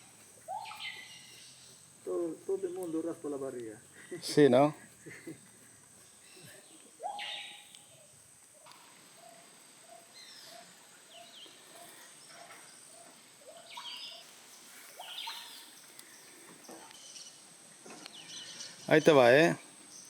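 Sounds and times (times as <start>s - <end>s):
high chirps: 0.0s - 3.1s, 6.0s - 8.8s, 13.4s - 17.5s
high insect whine: 0.0s - 20.0s.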